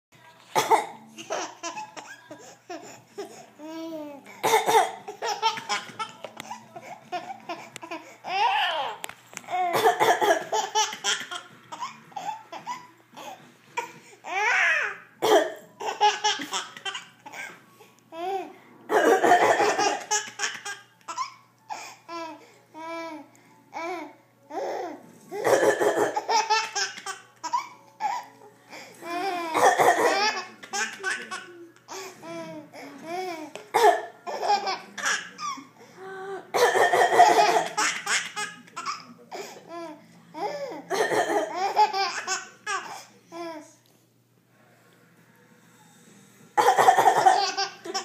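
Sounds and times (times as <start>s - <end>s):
baby coughing: 0.6s - 1.8s, 4.4s - 6.6s, 9.5s - 12.9s, 15.2s - 17.6s, 18.9s - 21.4s, 25.3s - 28.3s, 29.5s - 31.2s, 33.7s - 35.6s, 36.5s - 39.0s, 40.9s - 42.1s, 46.6s - 48.0s.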